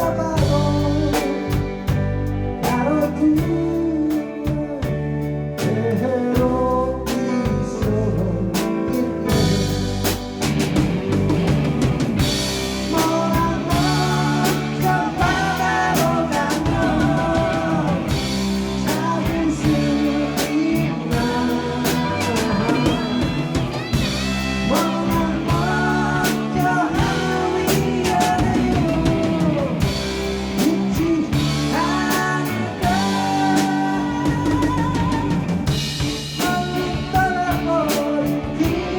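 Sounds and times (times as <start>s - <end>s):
band playing slow rock ballad: 0.0s - 38.9s
melodic lead line bending: 9.2s - 38.9s.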